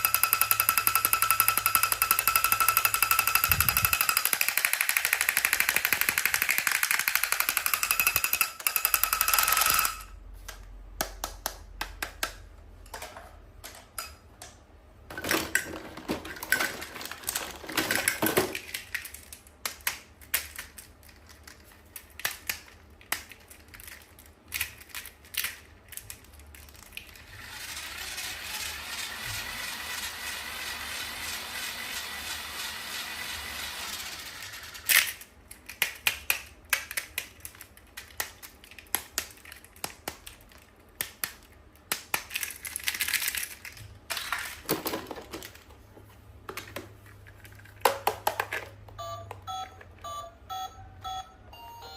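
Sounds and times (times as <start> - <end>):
clicks and taps on toys: 0.0 - 12.5.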